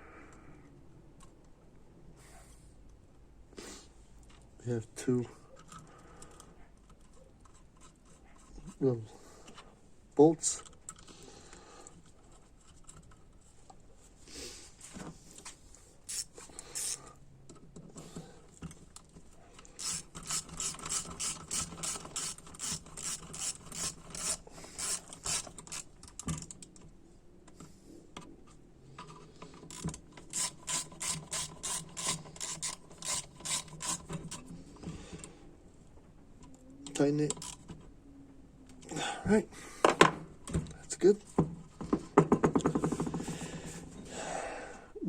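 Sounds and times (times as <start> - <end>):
hand ratchet clicking: 16.1 - 17.0, 19.7 - 26.6, 29.7 - 34.4, 37.3 - 37.6.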